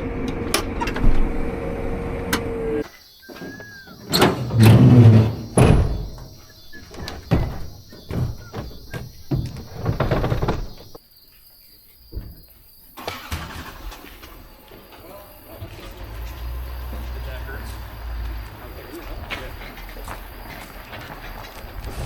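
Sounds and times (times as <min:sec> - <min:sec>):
vehicle door clunking: 0:02.2 - 0:11.0
knocks and rattles: 0:03.3 - 0:11.0.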